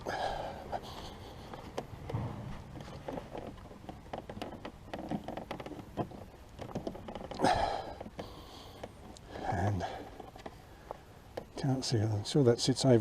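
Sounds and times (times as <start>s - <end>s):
plastic panel clicks and creaks: 1.5s - 9.3s, 10.0s - 11.8s.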